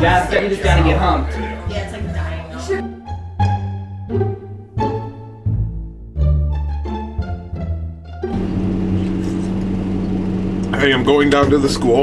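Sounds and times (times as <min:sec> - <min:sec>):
playful string music: 0:00.0 - 0:09.3
steady car hum: 0:08.4 - 0:11.9.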